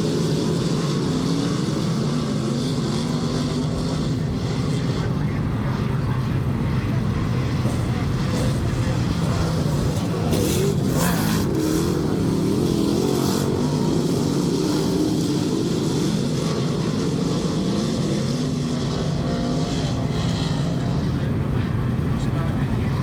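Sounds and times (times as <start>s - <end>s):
race car engines revving: 0.0s - 23.0s.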